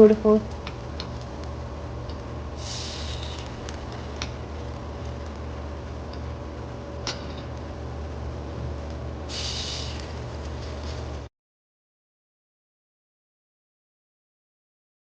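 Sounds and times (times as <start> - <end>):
steady low hum: 0.0 - 11.3
brief hiss: 2.6 - 3.4, 9.3 - 10.2.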